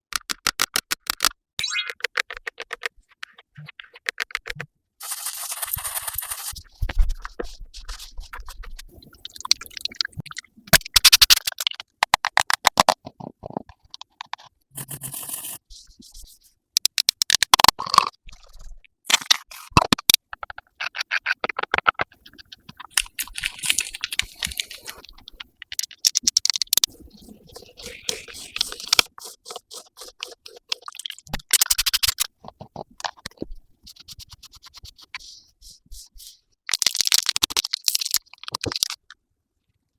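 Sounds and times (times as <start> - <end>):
scratchy strokes: 5.0 - 10.0, 14.7 - 16.6, 22.2 - 25.5, 26.8 - 36.5
rapid tapping clicks: 21.5 - 36.0.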